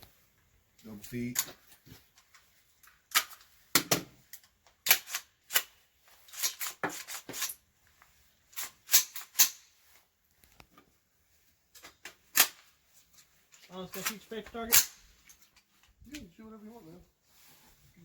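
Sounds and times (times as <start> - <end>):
rifle action metallic clacks: 1.2 - 7.6, 8.5 - 9.7, 11.7 - 16.2.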